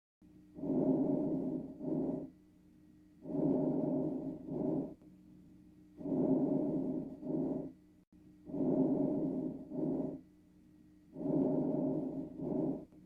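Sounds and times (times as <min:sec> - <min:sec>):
faint steady hum: 0:00.2 - 0:13.0
lung breath sounds: 0:00.6 - 0:02.3, 0:03.2 - 0:05.0, 0:06.0 - 0:07.8, 0:08.5 - 0:10.2, 0:11.2 - 0:13.0.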